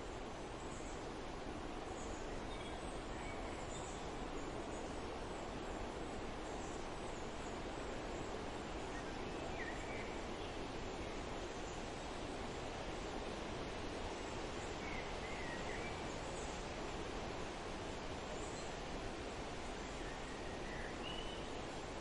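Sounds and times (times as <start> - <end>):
wind rushing through trees: 0.0 - 22.0
faint bird chirps: 20.0 - 21.6.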